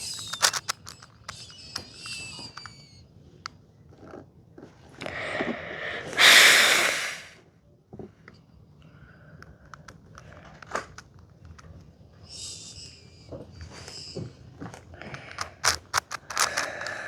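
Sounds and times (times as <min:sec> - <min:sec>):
puzzle cube clicking: 0:00.0 - 0:03.0, 0:15.4 - 0:17.0
person snorting breath: 0:05.1 - 0:07.3.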